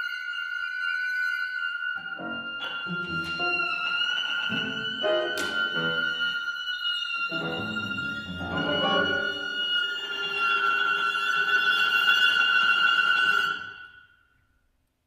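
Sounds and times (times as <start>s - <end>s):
chamber ensemble playing: 2.0s - 6.4s, 7.3s - 9.9s.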